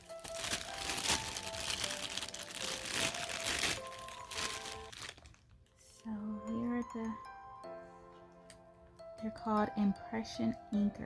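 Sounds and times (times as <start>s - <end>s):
packaging crinkling and rustling: 0.0s - 6.0s
soft background music: 0.0s - 11.0s.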